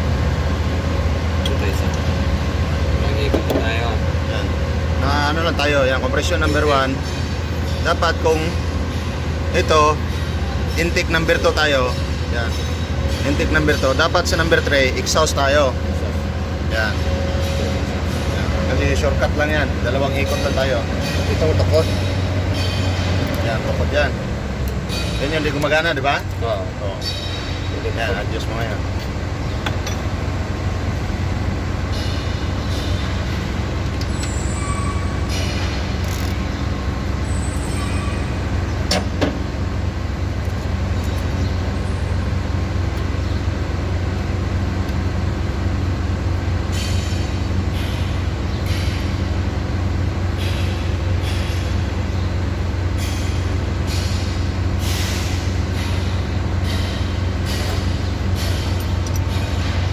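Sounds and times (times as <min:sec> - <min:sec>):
machinery droning: 0:00.0 - 0:59.9
sharp metallic click: 0:55.8 - 0:59.8.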